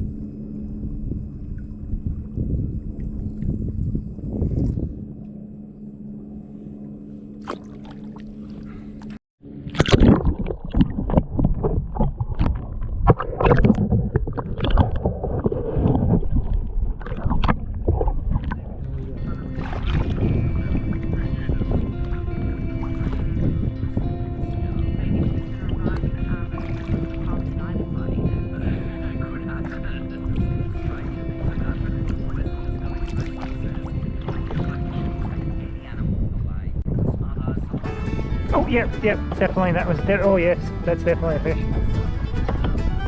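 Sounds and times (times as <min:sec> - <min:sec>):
steady low hum: 0:00.0 - 0:09.9, 0:17.6 - 0:43.0
low steady rumble: 0:00.0 - 0:13.1
water splashing: 0:07.3 - 0:36.3
background music of held notes: 0:19.2 - 0:35.9, 0:37.8 - 0:43.0.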